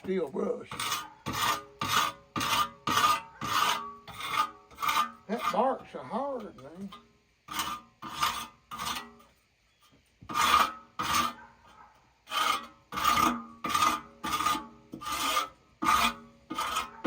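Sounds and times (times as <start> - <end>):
wire brush scrubbing bark: 0.0 - 9.3, 10.3 - 17.0.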